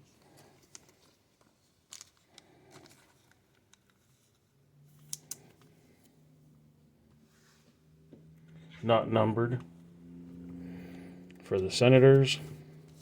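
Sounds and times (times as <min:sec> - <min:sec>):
trading cards clicking and rustling: 0:00.0 - 0:04.4, 0:05.0 - 0:05.8.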